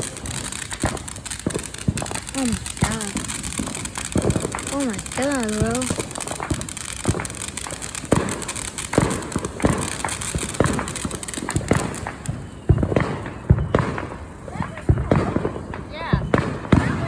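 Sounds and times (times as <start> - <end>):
fireworks crackling: 0.0 - 17.0
fireworks popping and banging: 0.0 - 17.0.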